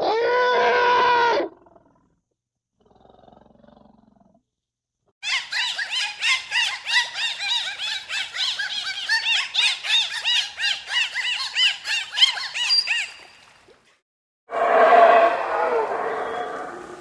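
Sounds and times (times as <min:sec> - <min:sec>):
high squealing animal calls: 0:14.5 - 0:17.0.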